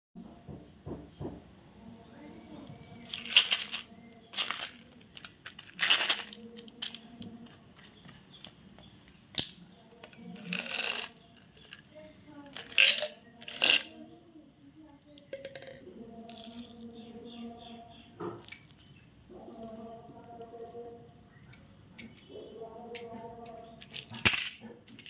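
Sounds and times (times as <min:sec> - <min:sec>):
wrappers rustling and clattering: 0:03.0 - 0:08.3.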